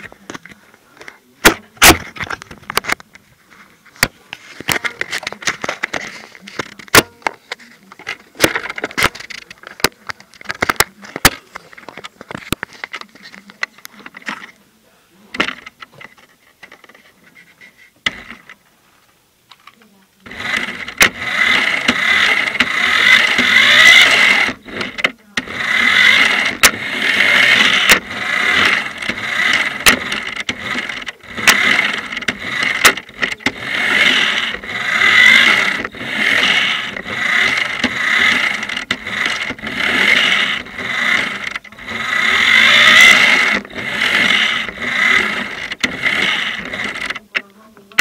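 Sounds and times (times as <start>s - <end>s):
chassis clicks and knocks: 0.0s - 3.3s, 4.0s - 14.5s, 15.3s - 17.1s, 18.0s - 18.6s, 19.5s - 48.0s
toy car motor surging: 20.2s - 47.3s.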